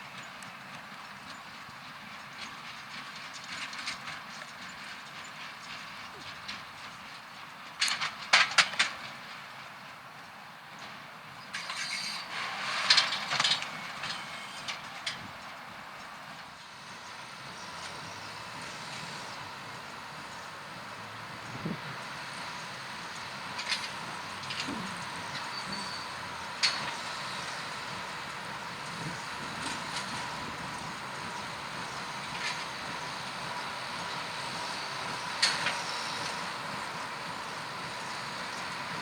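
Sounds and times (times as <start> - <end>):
baler machinery running: 16.8 - 39.0.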